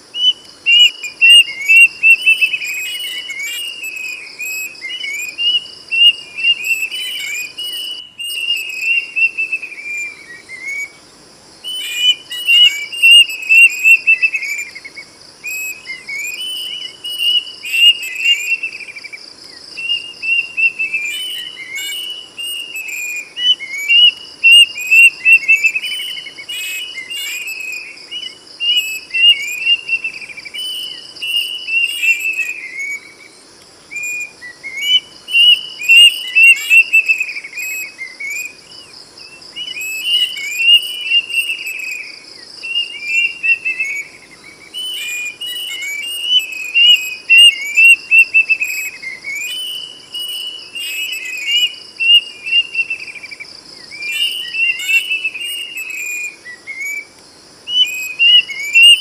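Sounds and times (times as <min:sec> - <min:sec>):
pulsing insect trill: 0:00.0 - 0:59.0
cuckoo whistling: 0:57.7 - 0:59.0.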